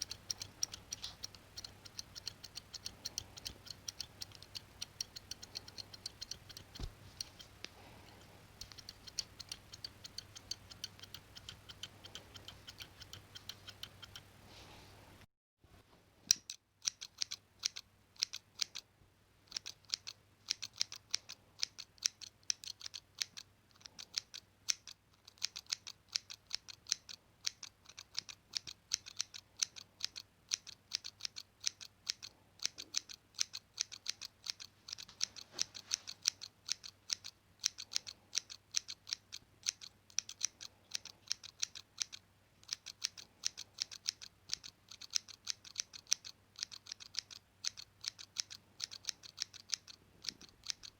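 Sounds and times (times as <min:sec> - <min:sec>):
scissors snipping: 0:00.0 - 0:14.2.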